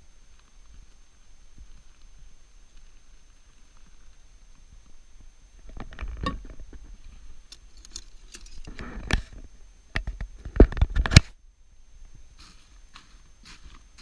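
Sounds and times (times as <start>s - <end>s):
handling clicks and rustles: 5.6s - 11.4s.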